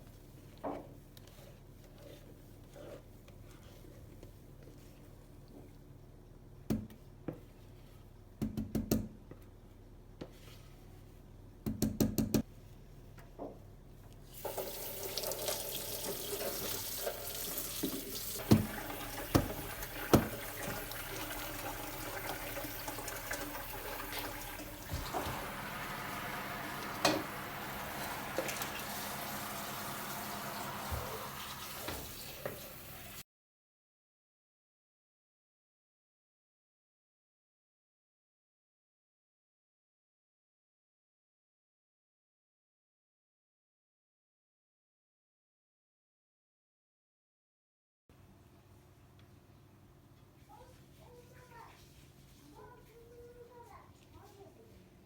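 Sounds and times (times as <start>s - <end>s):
tap water running into sink: 14.4s - 33.2s.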